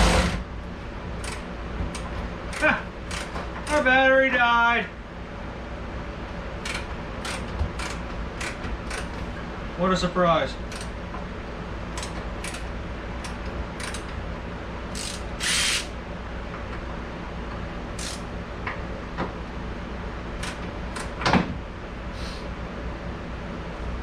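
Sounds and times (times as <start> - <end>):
shop fan humming: 0.0 - 24.0
tools and metal clicking: 1.2 - 3.8, 6.6 - 9.2, 10.7 - 10.9, 12.0 - 14.2.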